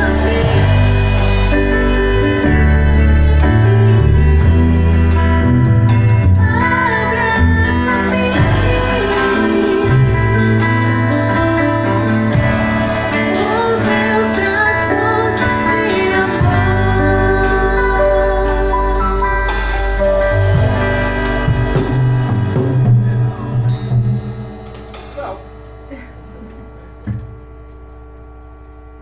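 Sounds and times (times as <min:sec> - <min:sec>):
person singing: 0:00.0 - 0:11.4, 0:13.0 - 0:19.4
live band playing: 0:00.0 - 0:27.2.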